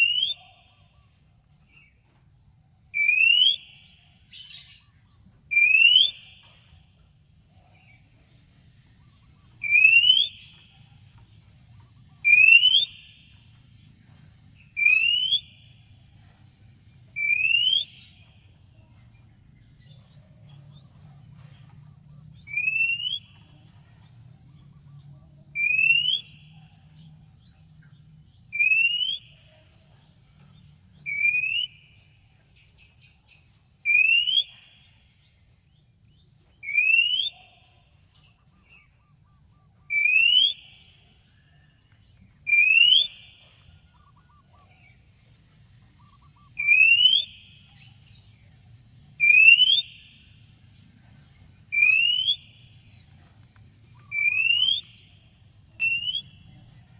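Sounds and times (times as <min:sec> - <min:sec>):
bird rising whistle: 0:46.3 - 0:47.5.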